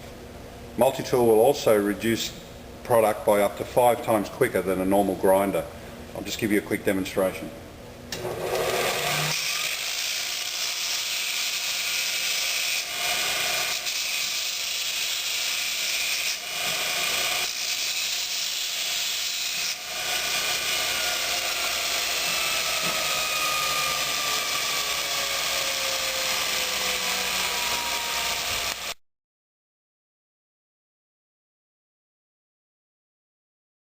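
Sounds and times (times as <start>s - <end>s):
belt grinder grinding metal: 8.2s - 29.0s.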